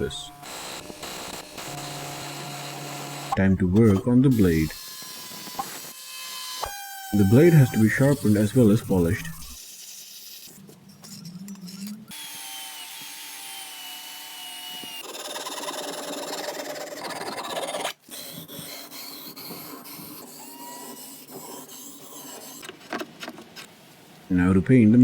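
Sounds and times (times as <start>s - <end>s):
power tool grinding steel blade: 0.0s - 3.4s, 4.3s - 10.6s, 12.1s - 18.0s.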